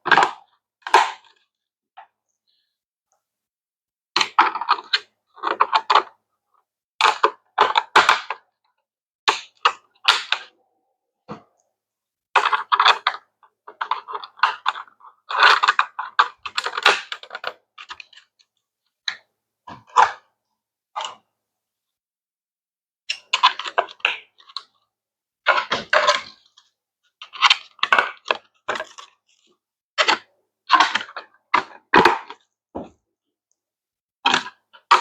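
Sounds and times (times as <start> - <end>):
plastic parts clicking and rattling: 12.4 - 18.3, 25.5 - 32.4.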